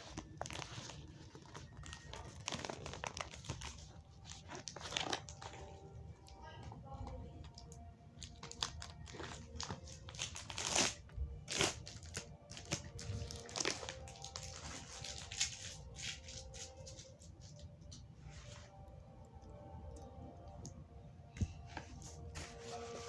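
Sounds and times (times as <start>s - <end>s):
package packaging tearing: 0.0s - 5.7s, 8.2s - 17.2s.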